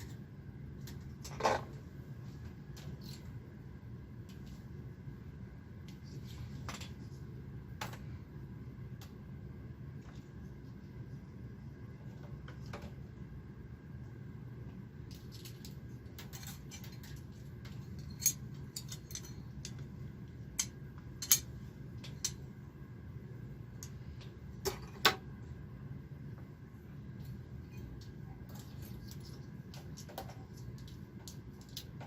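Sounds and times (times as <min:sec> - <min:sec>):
steady low hum: 0:00.0 - 0:32.0
light metallic clicks and clinks: 0:15.2 - 0:19.9.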